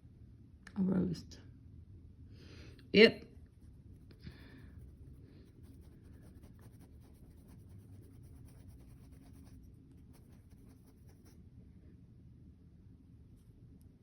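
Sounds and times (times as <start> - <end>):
low steady rumble: 0.0 - 14.0
paintbrush scratching on surface: 3.4 - 11.4.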